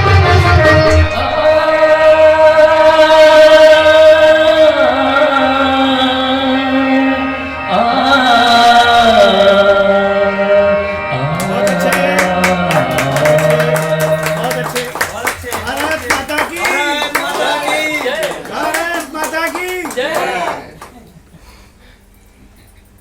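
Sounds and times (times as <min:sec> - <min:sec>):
film song over karaoke backing: 0:00.0 - 0:19.4
hand clapping: 0:11.4 - 0:21.2.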